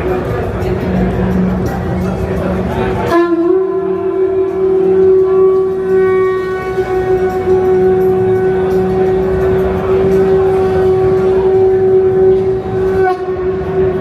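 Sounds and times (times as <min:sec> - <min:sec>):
pulsing bass: 0:00.0 - 0:14.0
horn-like tone over loudspeakers: 0:03.1 - 0:14.0.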